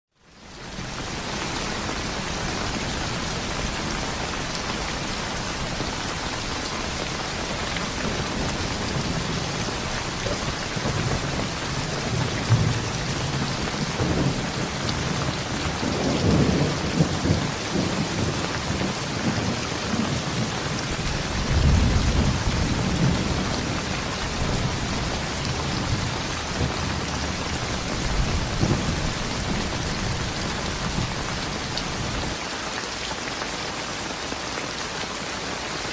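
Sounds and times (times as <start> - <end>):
heavy rain pouring: 0.1 - 35.9
thunder rumbling and cracking: 0.9 - 32.4.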